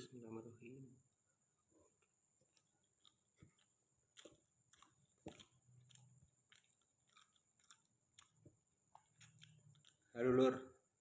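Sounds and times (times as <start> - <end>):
wet chewing mouth clicks: 1.8 - 10.2.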